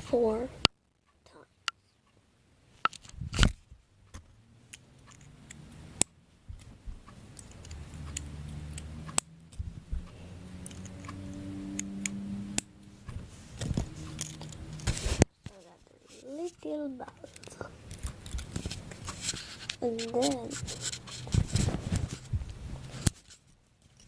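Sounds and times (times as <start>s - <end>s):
low hum: 3.2s - 15.3s
plastic pieces clicking and rattling: 17.2s - 18.8s.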